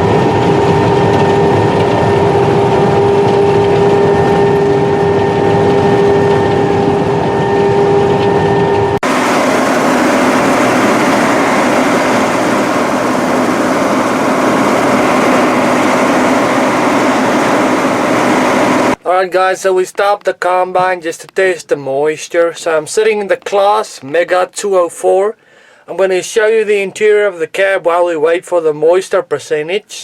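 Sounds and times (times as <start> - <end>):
combine harvester drone: 0.0 - 19.0.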